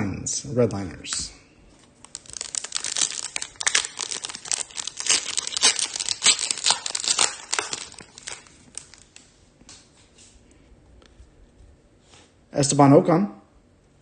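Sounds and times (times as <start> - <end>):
foil wrapper tearing and crinkling: 2.0 - 9.2.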